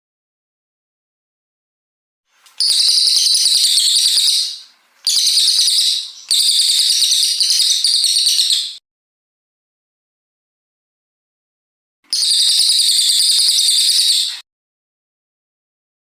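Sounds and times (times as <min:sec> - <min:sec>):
songbird chattering song: 0:02.4 - 0:08.8, 0:12.1 - 0:14.4.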